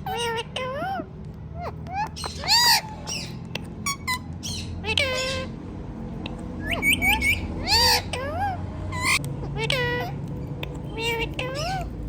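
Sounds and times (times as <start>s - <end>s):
parakeet chirping and squawking: 0.0s - 12.0s.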